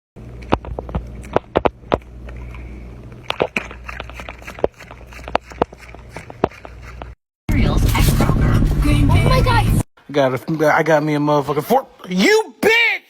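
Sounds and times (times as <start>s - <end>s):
steady low hum: 0.2s - 9.8s.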